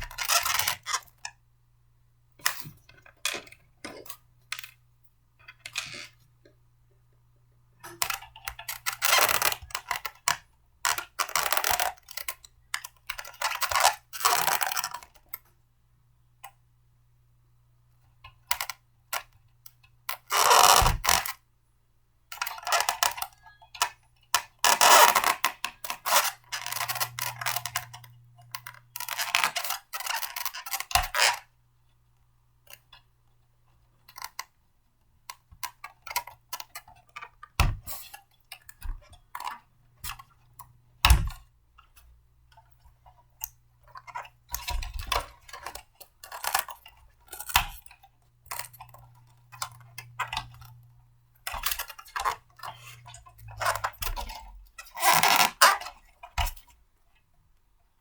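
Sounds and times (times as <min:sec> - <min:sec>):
blender parts clattering and scraping: 0:24.6 - 0:31.4, 0:43.9 - 0:56.1.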